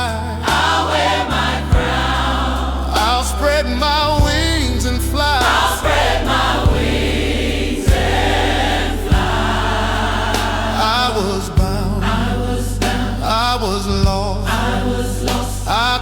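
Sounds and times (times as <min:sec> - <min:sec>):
bass line: 0:00.0 - 0:16.0
gospel choir singing: 0:00.0 - 0:16.0
steady beat: 0:00.5 - 0:03.5, 0:05.4 - 0:12.0.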